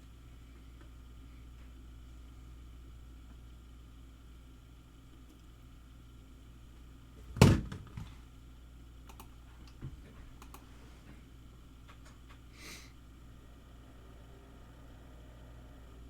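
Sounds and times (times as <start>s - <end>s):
thump on a desk: 7.4s - 8.1s.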